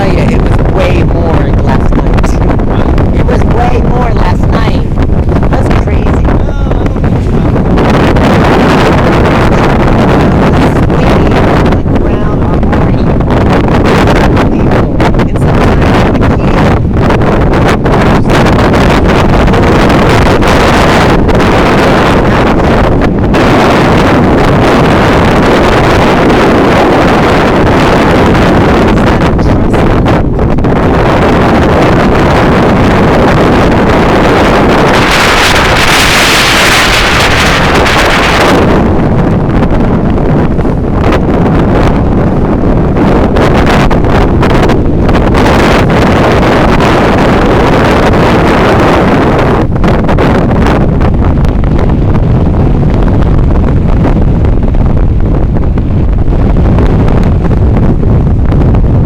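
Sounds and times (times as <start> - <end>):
wind buffeting microphone: 0.0 - 59.0.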